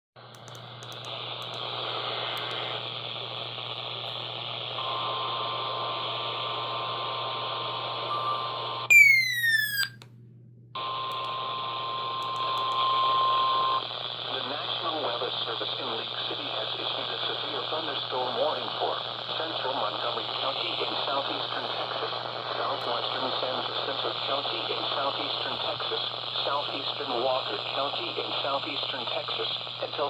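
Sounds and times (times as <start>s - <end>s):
falling electronic chirp: 8.2s - 10.0s
steady alert tone: 8.9s - 10.0s.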